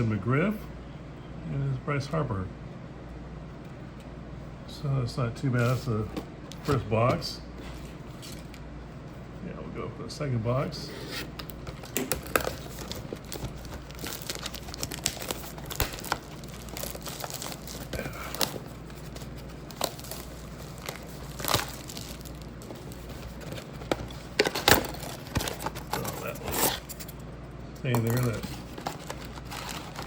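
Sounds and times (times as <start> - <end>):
plastic wrapping crinkling and tearing: 11.8 - 27.1, 27.9 - 30.0.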